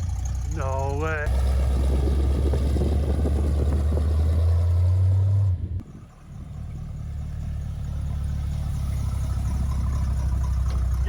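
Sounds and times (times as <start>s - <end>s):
engine low drone: 0.0s - 11.0s.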